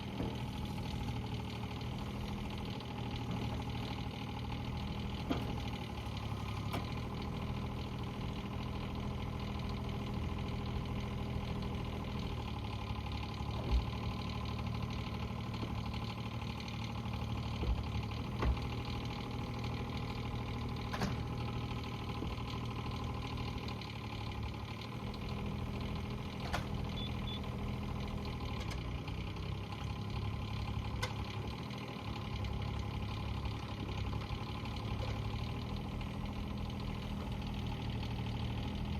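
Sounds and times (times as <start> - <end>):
excavator diesel engine running: 0.0 - 38.9
short clunks: 6.5 - 7.1, 17.6 - 18.9, 20.8 - 21.4, 26.4 - 27.5.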